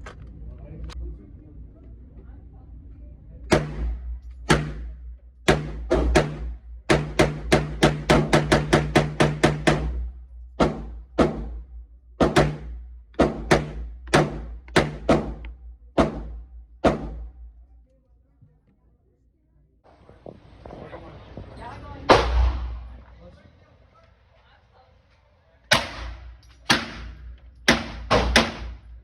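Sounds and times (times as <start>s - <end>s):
steady low hum: 0.0s - 29.0s
gunshots: 3.5s - 11.6s, 22.1s - 23.0s, 25.7s - 29.0s.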